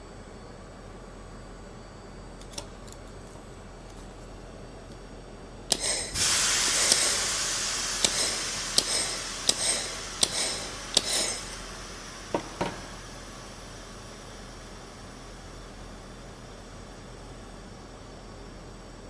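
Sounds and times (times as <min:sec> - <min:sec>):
laser welder snaps: 0:05.7 - 0:11.6
hiss: 0:05.7 - 0:14.0.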